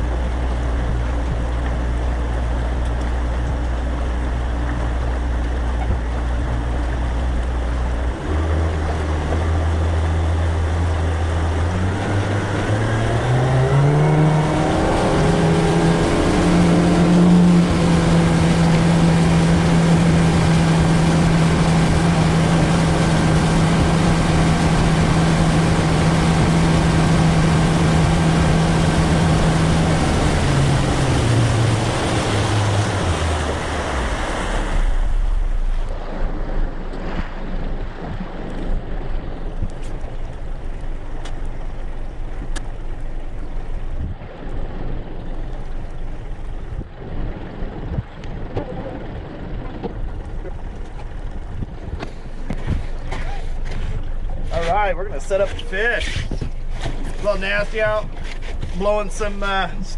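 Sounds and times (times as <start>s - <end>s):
boat motor: 0.0s - 59.9s.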